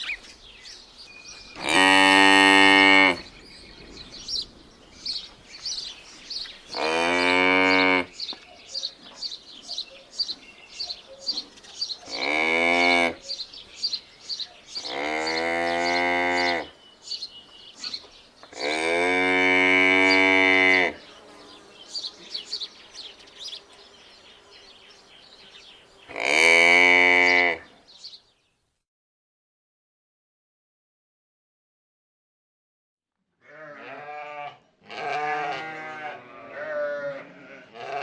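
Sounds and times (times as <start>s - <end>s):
small birds chirping: 0.0s - 19.0s, 19.8s - 28.6s
cattle mooing: 1.6s - 3.2s, 6.7s - 8.1s, 33.5s - 38.0s.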